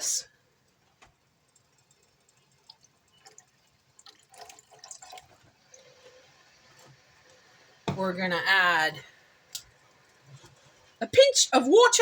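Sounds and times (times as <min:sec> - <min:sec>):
sauce dripping and splashing: 0:00.6 - 0:07.8.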